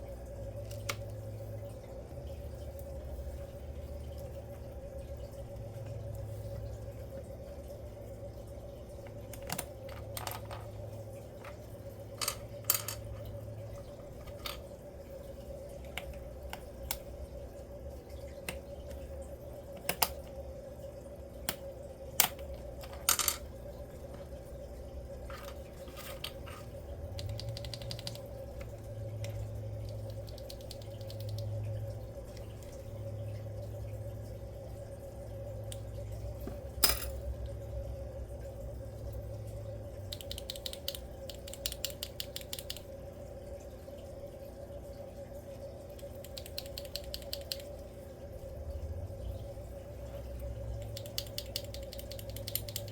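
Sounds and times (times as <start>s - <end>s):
steady hum: 0.0s - 52.9s
keycaps clicking and snapping: 27.1s - 28.3s, 29.8s - 31.5s, 40.1s - 42.9s, 46.0s - 47.7s, 50.8s - 52.9s.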